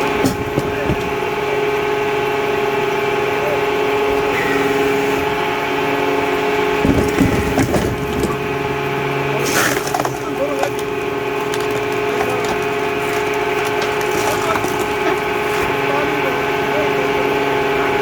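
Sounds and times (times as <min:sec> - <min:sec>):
wood knocking and cracking: 0:00.0 - 0:01.3, 0:06.7 - 0:08.6, 0:09.5 - 0:15.8
firewood processor humming: 0:00.0 - 0:18.0
sharp wood crack: 0:09.3 - 0:15.8.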